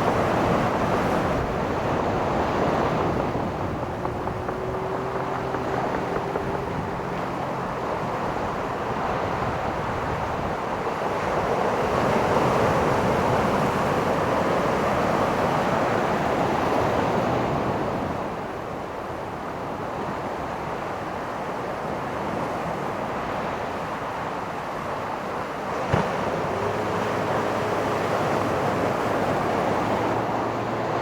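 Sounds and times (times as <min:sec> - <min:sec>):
wind on microphone: 0:00.0 - 0:21.1
ocean surf breaking: 0:00.0 - 0:31.0.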